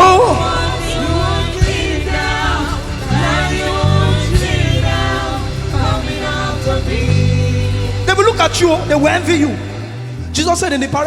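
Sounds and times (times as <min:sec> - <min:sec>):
gospel singers and choir: 0:00.0 - 0:10.8
backing band with bass: 0:00.0 - 0:11.0.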